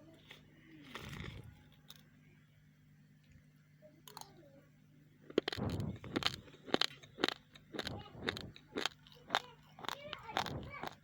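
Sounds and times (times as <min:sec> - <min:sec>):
chewing raw rice crunches: 0:05.2 - 0:11.0.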